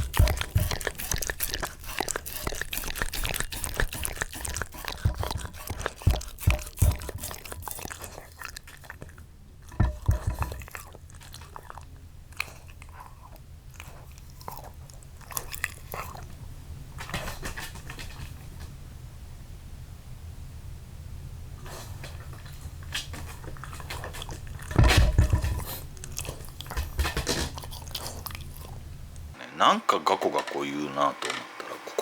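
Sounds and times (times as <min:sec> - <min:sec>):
dog crunching hard food: 0:00.0 - 0:18.7, 0:21.7 - 0:29.4.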